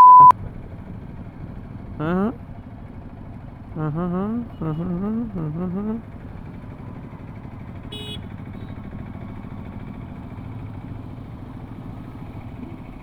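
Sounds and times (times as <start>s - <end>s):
short high beep: 0.0s - 0.3s
vehicle engine idling: 0.3s - 13.0s.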